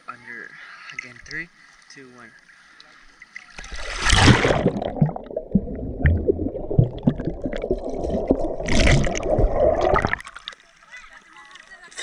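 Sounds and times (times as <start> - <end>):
water splash: 3.5 - 10.7
underwater rumble and bubbling: 3.6 - 10.6.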